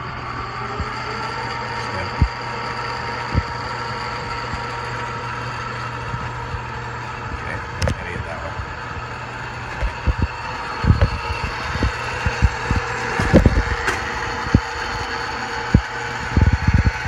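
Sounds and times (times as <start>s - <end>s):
lathe running: 0.0s - 17.0s
low thumps: 9.7s - 14.8s.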